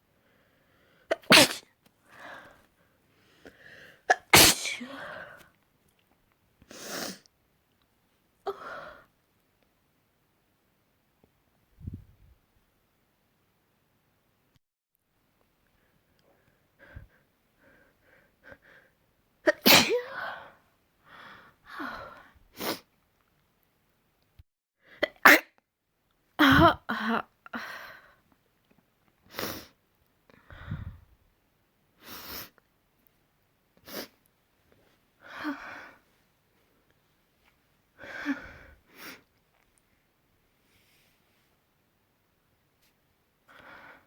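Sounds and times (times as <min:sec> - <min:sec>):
person sneezing: 0:01.1 - 0:01.6, 0:04.1 - 0:05.4, 0:19.5 - 0:20.2
faint sniffs and breaths: 0:40.6 - 0:41.6.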